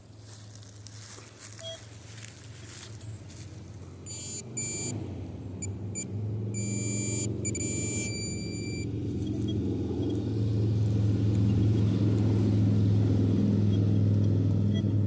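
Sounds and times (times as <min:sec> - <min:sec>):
metal detector beeps: 0:01.6 - 0:01.9, 0:04.0 - 0:05.0, 0:05.6 - 0:10.2.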